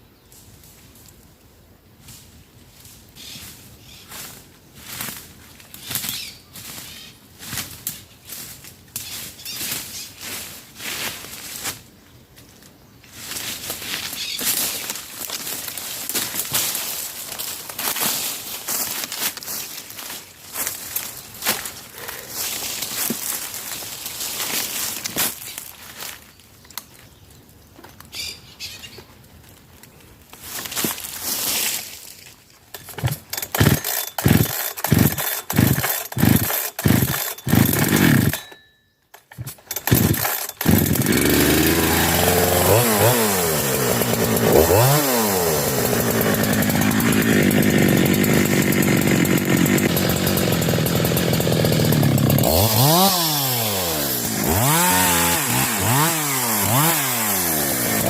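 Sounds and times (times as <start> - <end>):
chainsaw engine revving: 32.7 - 38.5, 39.3 - 58.0
chainsaw starter cord pulls: 32.7 - 58.0.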